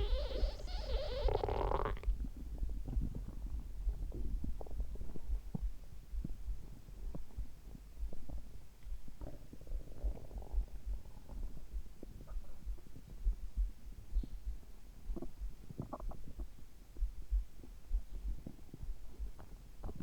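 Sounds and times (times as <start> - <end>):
stomach gurgling: 0.0 - 5.3, 15.1 - 16.6
heartbeat thumps: 0.0 - 20.0.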